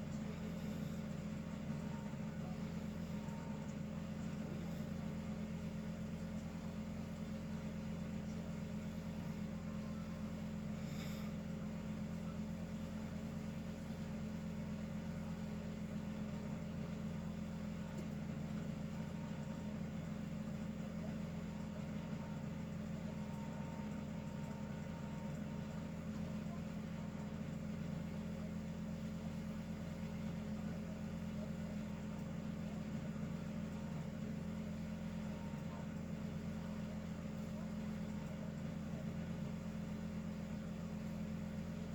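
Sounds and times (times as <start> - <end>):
steady low hum: 0.0 - 41.9.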